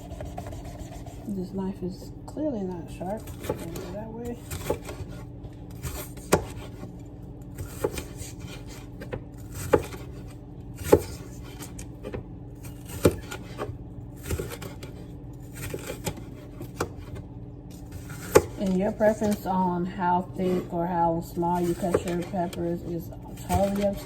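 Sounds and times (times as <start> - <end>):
knife chopping on cutting board: 0.0 - 1.3, 3.2 - 5.2, 5.8 - 6.8, 7.6 - 10.2, 10.8 - 14.9, 17.9 - 19.2, 21.6 - 22.3, 23.4 - 24.0
steady low hum: 0.0 - 24.0.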